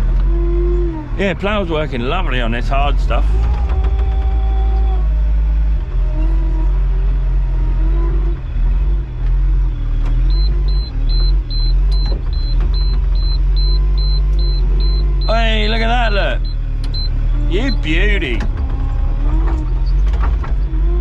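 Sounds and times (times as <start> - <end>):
tractor engine rumbling: 0.0 - 21.0
high electronic beeps: 13.2 - 18.4.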